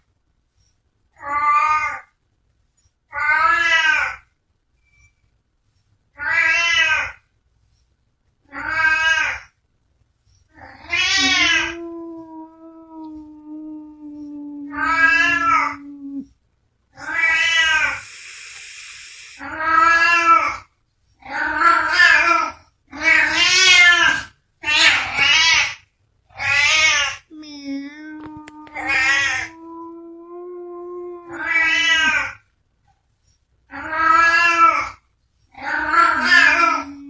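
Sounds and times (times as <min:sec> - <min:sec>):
cat hissing: 0:10.6 - 0:16.3, 0:17.0 - 0:20.2, 0:27.4 - 0:30.0, 0:35.6 - 0:37.0
cat yowling: 0:10.6 - 0:16.4, 0:17.0 - 0:20.5, 0:26.4 - 0:32.4, 0:35.6 - 0:37.0.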